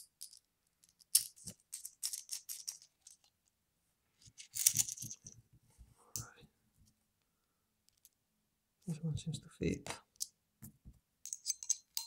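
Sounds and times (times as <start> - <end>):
screwdriver bits clicking and rattling: 0.2 - 3.3, 4.4 - 5.4, 11.3 - 12.0.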